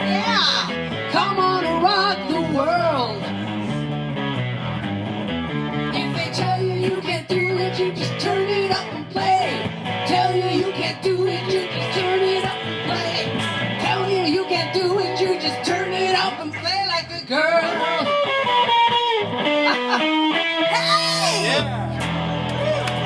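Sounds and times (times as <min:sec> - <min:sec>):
live rock band playing: 0:00.0 - 0:23.0
pitch-bending lead guitar line: 0:00.0 - 0:23.0.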